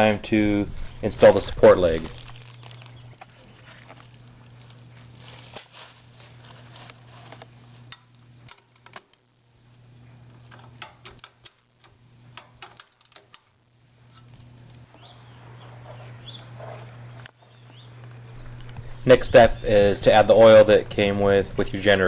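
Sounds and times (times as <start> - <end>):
faint low hum: 0.0 - 22.0
hand tools and bolts clicking: 10.5 - 14.3.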